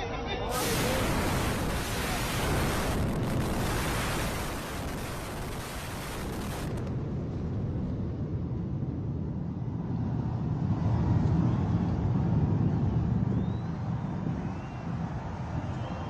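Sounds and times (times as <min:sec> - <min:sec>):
high hiss: 0:00.5 - 0:06.8
distant demolition rumble: 0:00.5 - 0:10.7.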